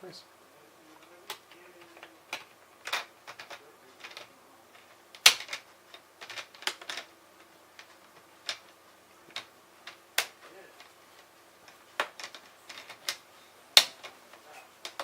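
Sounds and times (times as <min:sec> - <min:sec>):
plastic clips snapping into place: 0:11.7 - 0:14.2.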